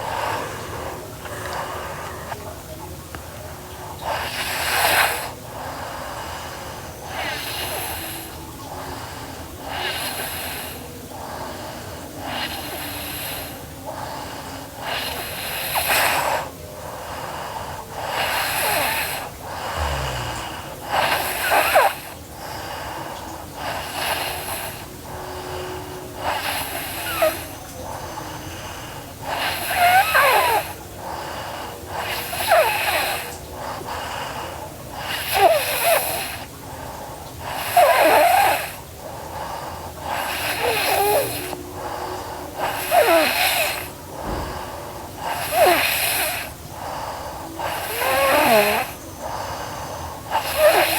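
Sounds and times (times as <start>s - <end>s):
girl snoring: 18.1s - 22.2s, 26.2s - 27.5s, 29.3s - 30.8s, 31.9s - 33.4s, 35.0s - 36.5s, 37.5s - 38.8s, 40.0s - 41.6s, 42.6s - 46.6s, 47.6s - 49.0s, 50.3s - 50.9s.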